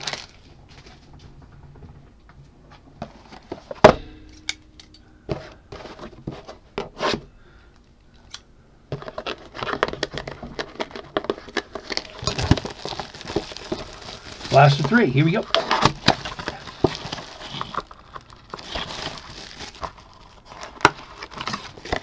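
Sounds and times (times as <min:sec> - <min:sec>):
packaging crinkling torn open: 0:00.0 - 0:00.8, 0:09.0 - 0:22.0.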